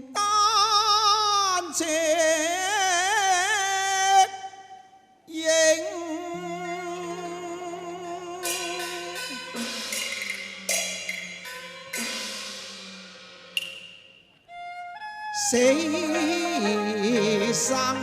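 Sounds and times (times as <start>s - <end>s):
metal percussion crashes: 8.4s - 14.3s.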